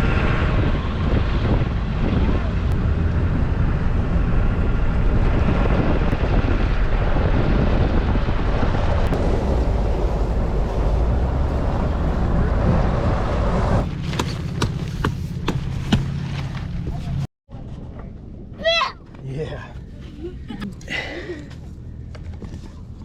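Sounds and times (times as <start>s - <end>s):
wind buffeting microphone: 0.0s - 13.9s
vehicle engine rumble: 0.0s - 23.0s.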